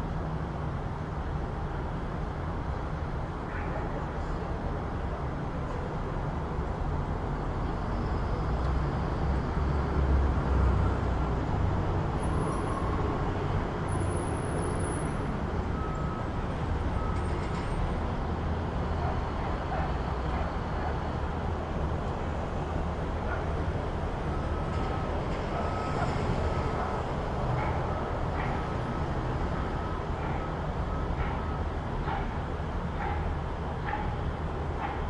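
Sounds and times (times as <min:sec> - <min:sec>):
passing vehicles: 0:00.0 - 0:35.0.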